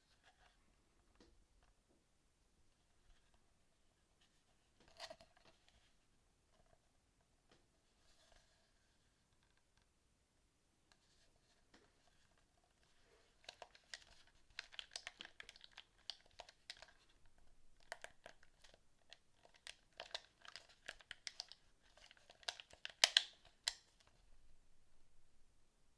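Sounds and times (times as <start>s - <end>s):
small plastic parts clicking and crinkling: 4.8s - 5.8s, 12.0s - 24.2s.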